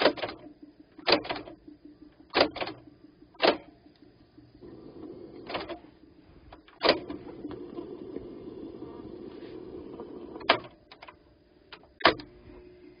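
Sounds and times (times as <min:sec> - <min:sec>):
tape recorder clunks: 0:00.0 - 0:01.6, 0:02.2 - 0:03.8, 0:06.5 - 0:07.9, 0:10.4 - 0:12.4
tape motor and reels running: 0:00.0 - 0:13.0.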